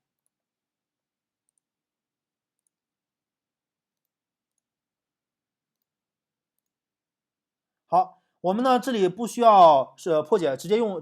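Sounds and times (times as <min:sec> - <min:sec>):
computer mouse clicks: 0:00.0 - 0:00.4, 0:01.4 - 0:01.8, 0:02.5 - 0:03.0, 0:03.9 - 0:04.9, 0:05.6 - 0:06.9.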